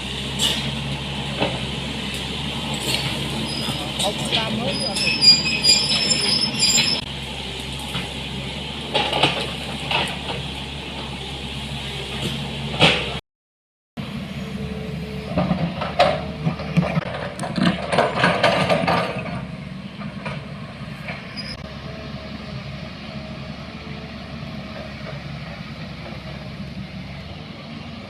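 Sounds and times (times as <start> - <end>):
clanks and rattles: 15.3 - 21.3.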